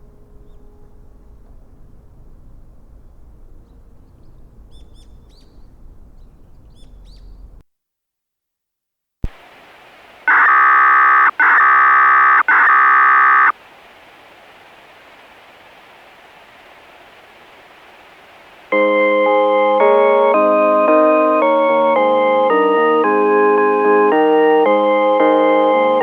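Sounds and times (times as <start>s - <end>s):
bird chirps: 4.0s - 7.5s
steady hiss: 9.3s - 21.5s
loud steady electronic tones: 10.3s - 13.5s.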